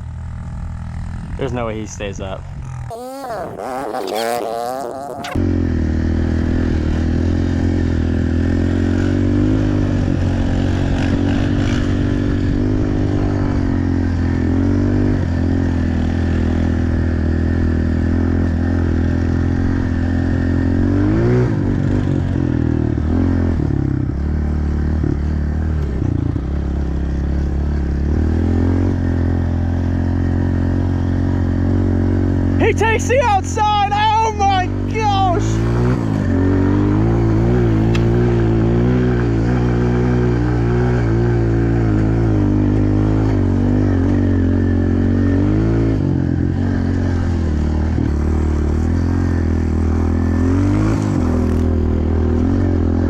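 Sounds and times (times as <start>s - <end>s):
small motorbike engine running: 2.5s - 14.4s, 34.2s - 39.7s, 46.1s - 52.1s.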